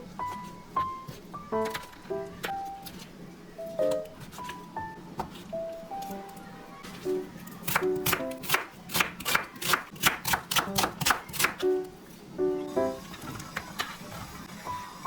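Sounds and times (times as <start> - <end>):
background music: 0.0 - 8.6, 10.3 - 13.2.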